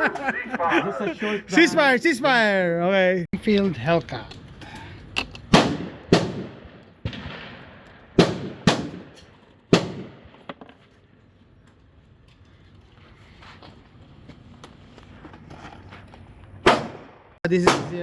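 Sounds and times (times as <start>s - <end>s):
shooting range background: 3.4s - 11.9s, 16.6s - 18.0s
pistol gunshots with echo: 5.5s - 10.3s, 16.6s - 18.0s
faint gunshot: 16.6s - 18.0s.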